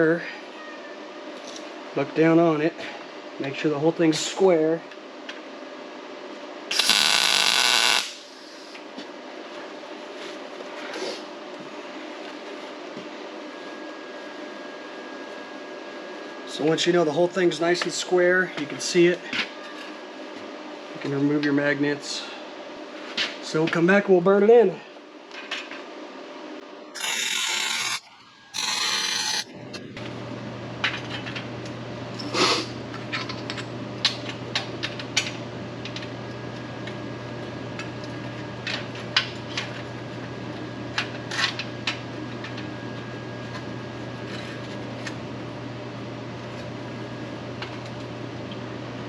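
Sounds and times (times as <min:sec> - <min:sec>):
electrical hum: 0:06.5 - 0:08.7, 0:26.6 - 0:38.9
welding arc bursts: 0:06.7 - 0:08.3, 0:27.0 - 0:28.0, 0:28.6 - 0:29.4.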